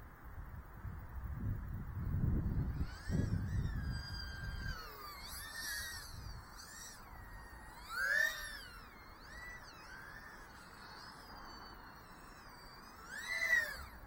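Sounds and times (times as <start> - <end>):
drone motors whining: 1.4 - 14.0.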